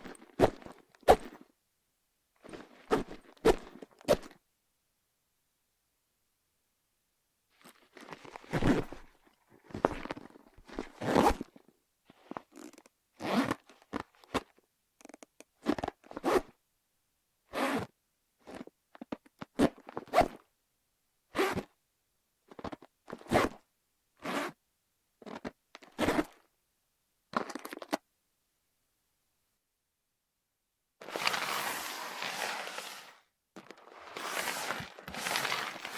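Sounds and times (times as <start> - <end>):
handbag rustling: 31.0 - 35.9
metal chain strap scraping: 31.0 - 35.9.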